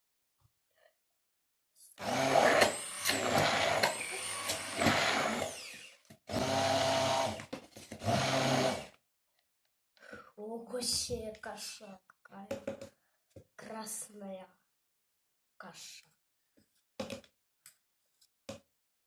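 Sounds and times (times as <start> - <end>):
blender motor whining: 2.0 - 9.0.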